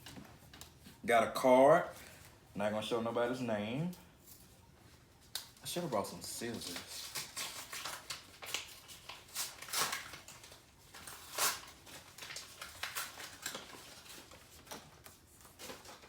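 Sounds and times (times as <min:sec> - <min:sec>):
paper envelope tearing and rustling: 0:05.7 - 0:16.0.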